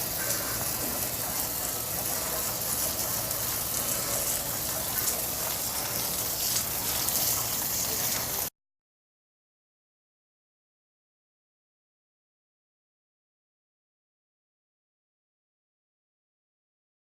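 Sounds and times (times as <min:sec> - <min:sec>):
water jet spraying: 0:00.0 - 0:08.5.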